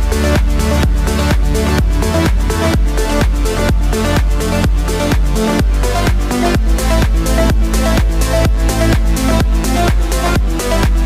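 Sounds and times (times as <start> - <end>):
electronic dance music: 0.0 - 11.0.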